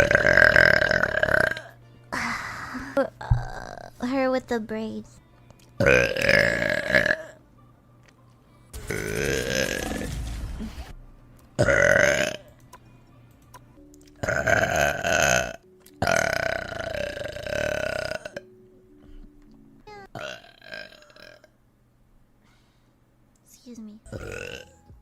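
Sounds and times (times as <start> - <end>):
woman burping: 5.8 - 7.4, 14.2 - 18.5, 20.2 - 21.5, 24.1 - 24.8.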